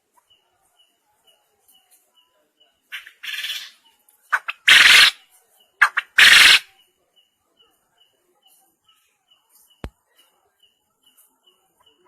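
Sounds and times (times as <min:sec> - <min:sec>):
quail calling: 0:02.9 - 0:05.2, 0:05.8 - 0:06.7.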